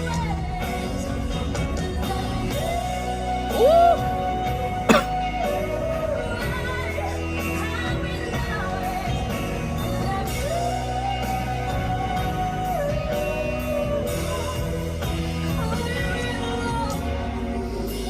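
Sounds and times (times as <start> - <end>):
band playing steady beat: 4.9 - 5.3.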